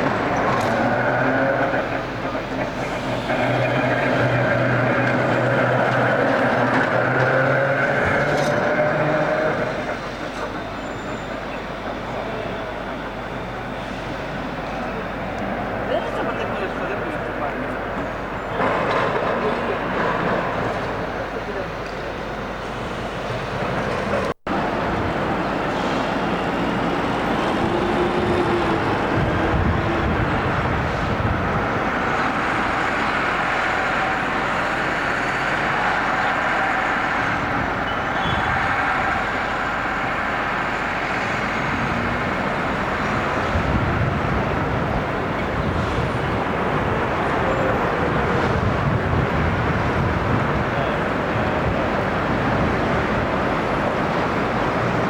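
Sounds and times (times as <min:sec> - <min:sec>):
vehicles running: 0:00.0 - 0:55.0.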